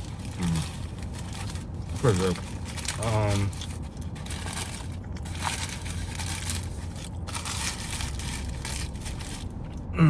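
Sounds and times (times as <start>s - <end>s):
crackly chewing of burger: 0.0s - 10.0s
steady low hum: 0.0s - 10.0s.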